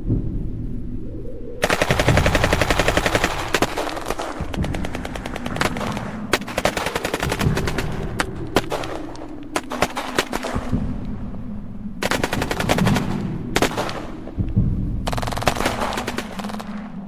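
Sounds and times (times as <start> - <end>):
low rumble: 0.0 - 17.0
machine-gun fire: 1.6 - 10.7, 12.0 - 14.1, 15.1 - 16.8.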